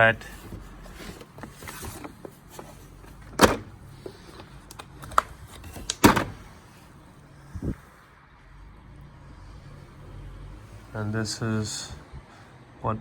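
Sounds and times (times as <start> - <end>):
socket set clicks and rattles: 0.3 - 6.4.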